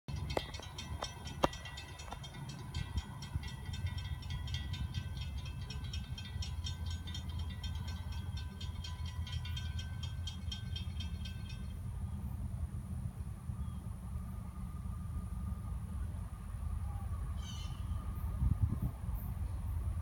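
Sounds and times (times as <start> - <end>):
rapid metallic clicking of wheels: 0.1 - 12.4
freight train rumble: 0.1 - 20.0.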